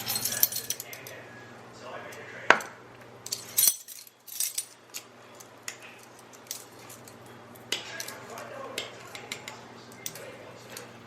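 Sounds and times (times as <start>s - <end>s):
metallic clinks of measuring spoons: 0.0s - 1.1s.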